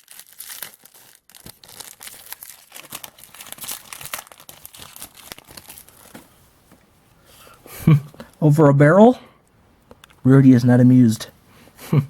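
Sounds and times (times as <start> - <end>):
foil wrapper tearing and crinkling: 0.0 - 6.2.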